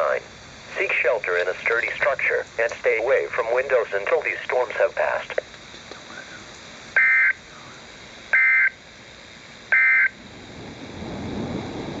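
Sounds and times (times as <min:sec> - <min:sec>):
low rough noise: 0:00.0 - 0:12.0.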